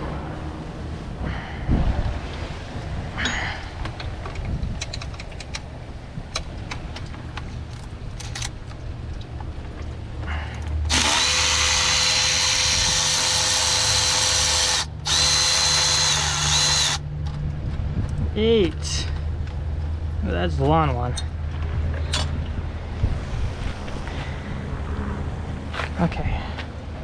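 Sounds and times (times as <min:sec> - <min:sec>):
tool handling clicks: 0:03.9 - 0:05.7, 0:06.3 - 0:08.8
power tool spinning: 0:10.9 - 0:17.0.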